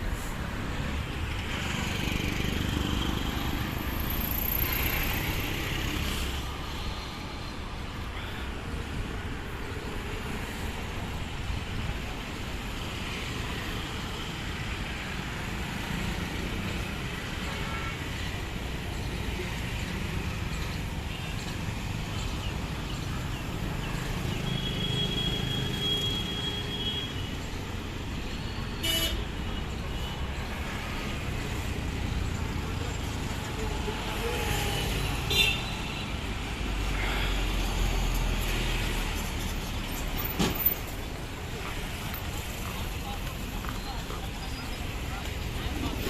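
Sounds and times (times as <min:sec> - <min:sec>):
road traffic rumble: 0:00.0 - 0:46.0
car horn: 0:28.8 - 0:29.2.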